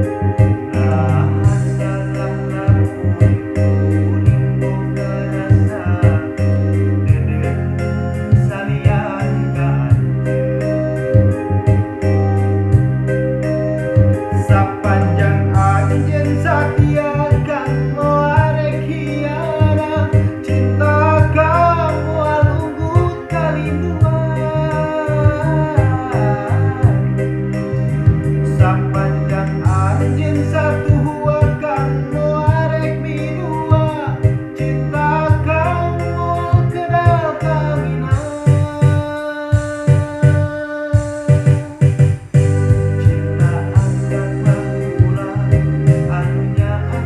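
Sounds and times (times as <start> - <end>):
backing track with bass and beat: 0.0 - 47.0
keyboard chords: 0.0 - 47.0
person singing pop song: 0.0 - 47.0
steady drum beat: 38.1 - 47.0.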